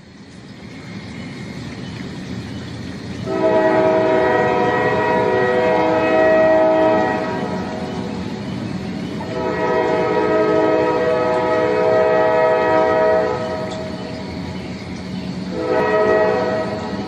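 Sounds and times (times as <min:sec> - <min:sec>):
train rumbling: 0:00.0 - 0:17.0
train horn blast: 0:03.2 - 0:08.2, 0:09.2 - 0:14.0, 0:15.5 - 0:17.0.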